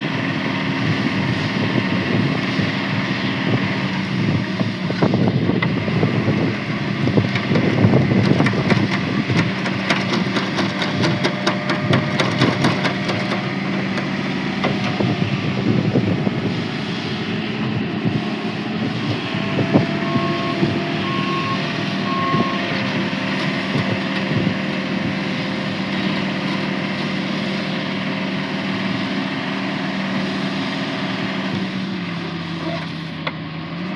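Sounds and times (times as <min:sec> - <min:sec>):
diesel engine running: 0:00.0 - 0:33.9
rapid clattering: 0:07.3 - 0:15.0
reversing beeps: 0:19.4 - 0:23.0.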